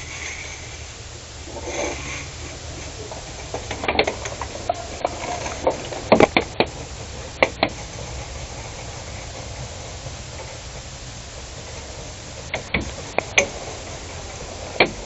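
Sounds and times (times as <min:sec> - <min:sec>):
low background rumble: 0:00.0 - 0:15.0
sharp knocks and cracks: 0:02.8 - 0:10.7, 0:12.4 - 0:15.0.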